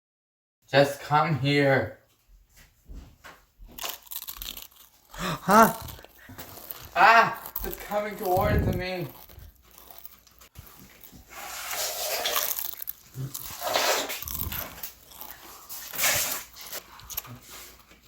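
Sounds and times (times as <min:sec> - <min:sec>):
crackers crunching: 0:03.7 - 0:18.0.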